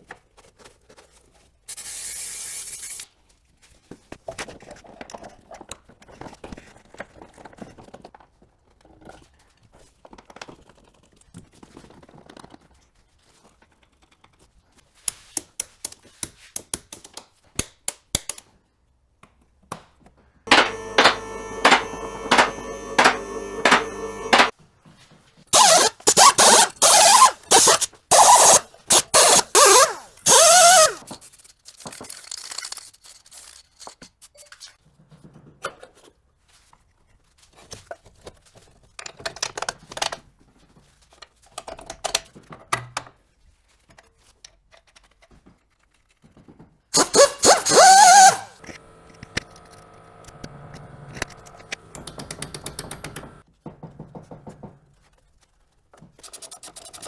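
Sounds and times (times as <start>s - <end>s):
loud clattering tool bursts: 20.5s - 24.5s, 25.6s - 31.0s, 47.0s - 50.0s
metal parts knocking and scraping: 20.5s - 24.5s, 25.6s - 31.0s, 47.0s - 48.5s.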